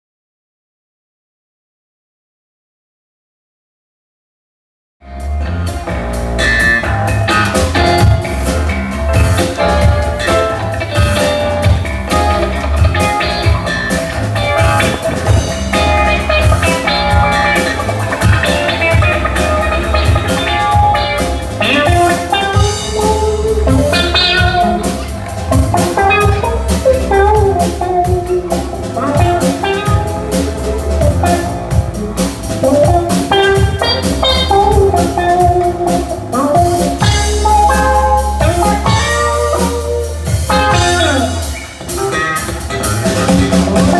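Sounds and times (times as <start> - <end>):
band music with drum kit: 5.0 - 43.9.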